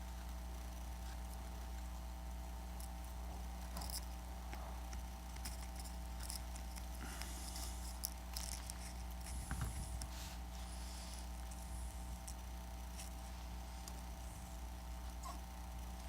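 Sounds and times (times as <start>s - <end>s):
low electrical hum: 0.0s - 16.0s
adhesive tape crinkling and scratching: 4.8s - 10.2s.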